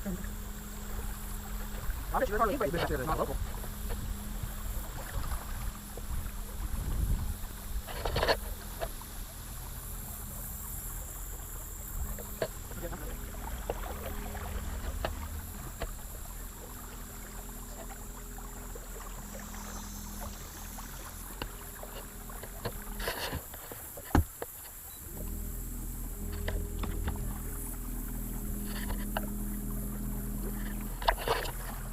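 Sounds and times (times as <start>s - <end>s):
boat motor running: 0.0s - 31.9s.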